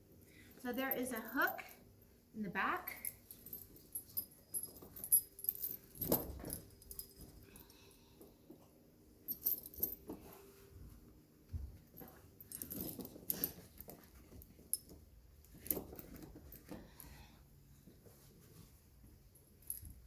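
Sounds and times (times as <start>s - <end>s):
metal chain links jangling: 0.0s - 8.2s, 9.3s - 10.3s, 11.8s - 17.2s, 19.4s - 20.0s.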